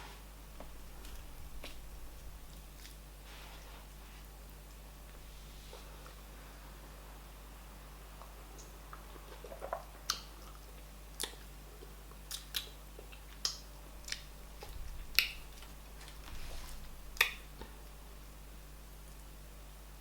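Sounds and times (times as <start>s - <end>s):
person chewing: 0.5s - 3.0s, 8.6s - 18.0s
wet mouth smacks: 12.3s - 16.2s, 17.2s - 17.4s.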